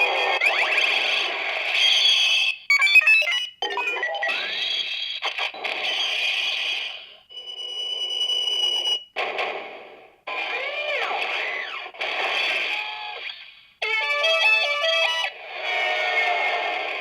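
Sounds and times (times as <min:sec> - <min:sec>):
stepped beeps: 0:02.7 - 0:04.1.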